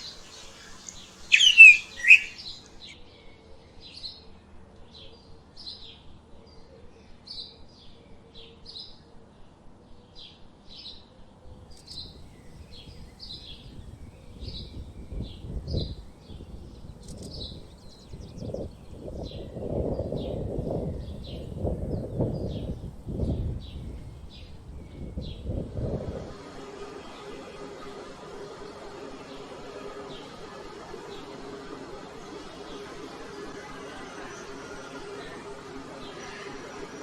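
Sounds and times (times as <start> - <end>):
low rough noise: 0.0 - 3.0, 11.5 - 37.0
small birds chirping: 0.0 - 3.0, 11.7 - 25.6.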